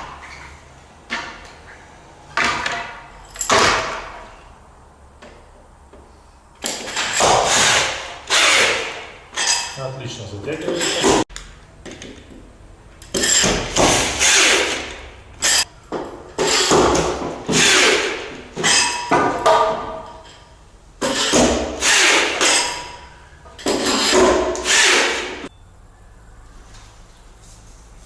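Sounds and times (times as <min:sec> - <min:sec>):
power tool driving nuts: 0:06.6 - 0:09.8, 0:10.6 - 0:11.2, 0:13.0 - 0:15.7, 0:16.4 - 0:19.2, 0:21.0 - 0:23.0, 0:23.6 - 0:25.5.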